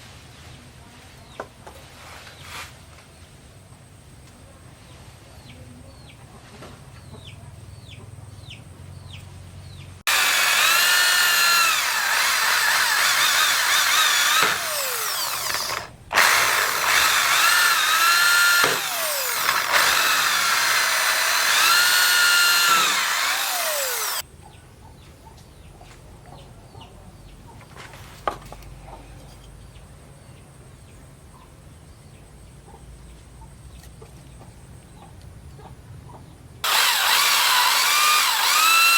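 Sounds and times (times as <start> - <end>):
power tool whining: 10.1 - 24.2, 36.6 - 38.9.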